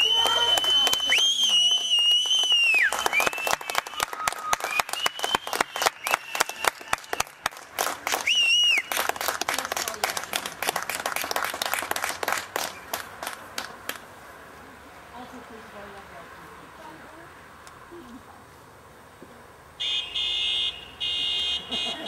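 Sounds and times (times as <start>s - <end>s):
whistling fireworks: 0.0s - 7.3s, 8.2s - 9.0s
fireworks crackling: 0.0s - 14.0s.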